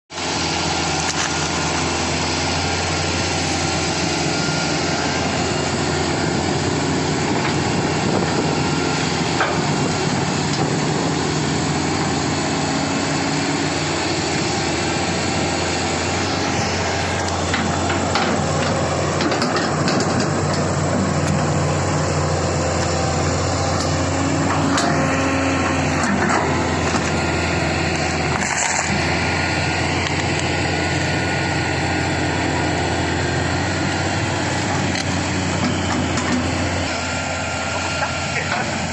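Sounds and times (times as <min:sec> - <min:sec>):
diesel engine running: 0:00.1 - 0:38.9.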